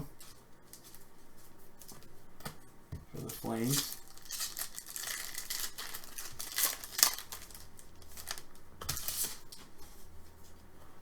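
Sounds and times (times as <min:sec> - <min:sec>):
cards and plastic rustling: 0:03.2 - 0:09.8.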